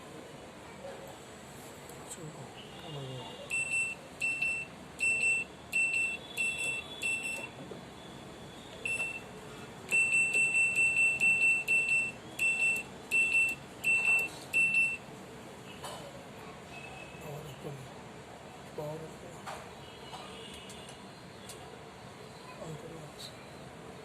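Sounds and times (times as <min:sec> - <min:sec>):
washing machine control panel beeping: 0:03.5 - 0:07.6, 0:08.8 - 0:09.3, 0:09.9 - 0:15.1.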